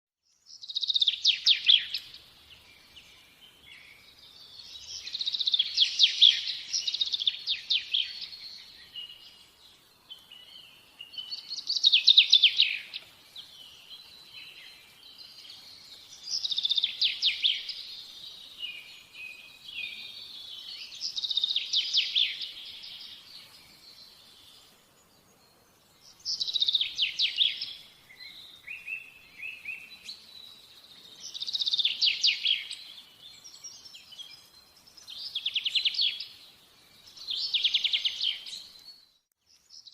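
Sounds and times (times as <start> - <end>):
songbird trilling: 4.6 - 9.3, 10.4 - 14.6, 26.2 - 30.3.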